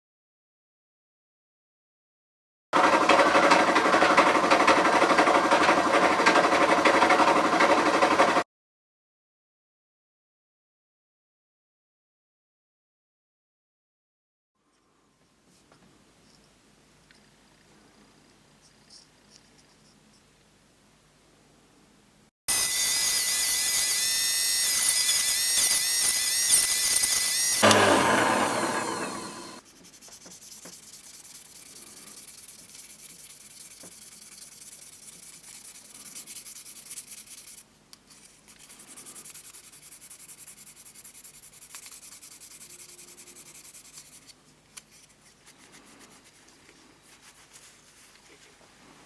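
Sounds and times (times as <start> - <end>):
sanding metal part: 2.8 - 8.4, 22.5 - 46.4
power tool whining: 22.5 - 29.6.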